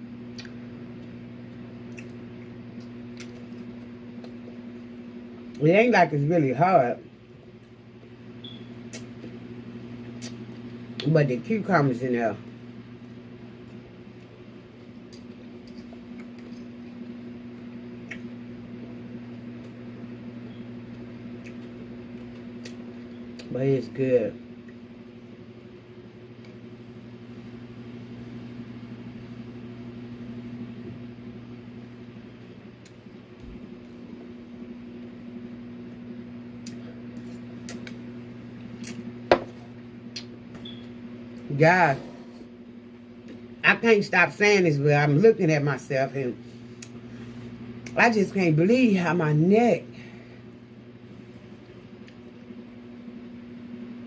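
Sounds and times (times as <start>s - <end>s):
low electrical hum: 0.0s - 54.0s
wet chewing: 1.8s - 4.6s.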